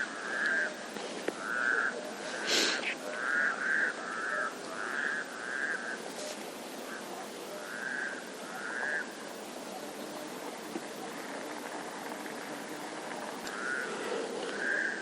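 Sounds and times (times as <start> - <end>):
animal hiss: 2.2 - 3.0
animal giving rough calls: 11.6 - 15.0.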